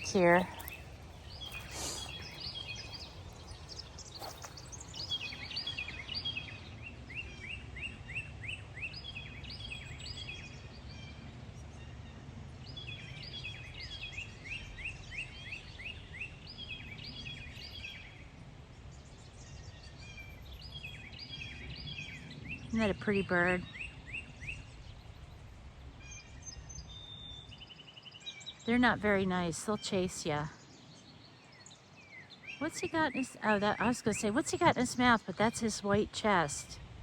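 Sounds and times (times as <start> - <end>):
songbird chirping: 0.0 - 12.0, 12.6 - 37.0.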